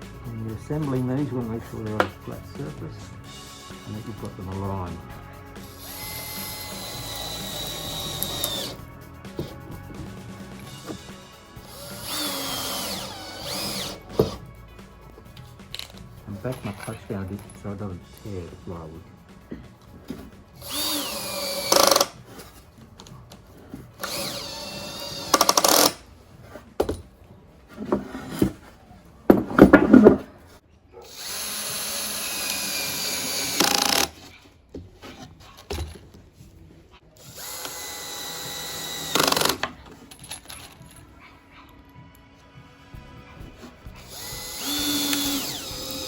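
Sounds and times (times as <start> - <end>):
drill-driver motor whine: 5.6 - 8.8, 11.6 - 14.4, 20.6 - 22.1, 24.0 - 26.0, 31.1 - 34.1, 37.2 - 39.7, 44.0 - 46.0.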